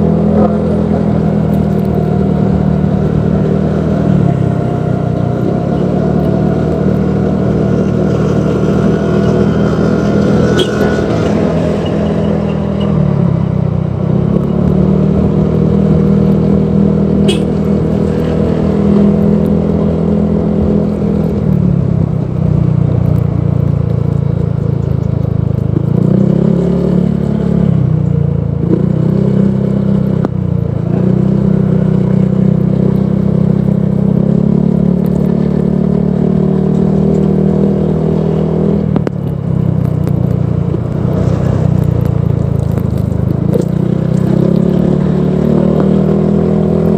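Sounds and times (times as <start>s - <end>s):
scooter engine exhaust note: 0.0s - 14.6s, 15.2s - 21.1s.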